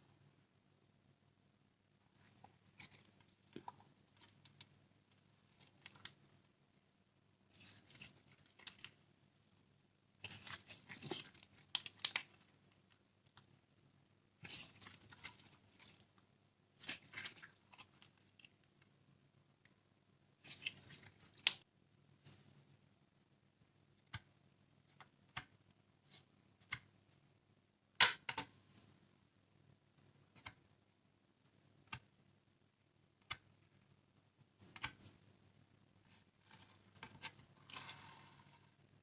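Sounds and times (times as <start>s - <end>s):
slime squishing and popping: 10.2s - 12.5s.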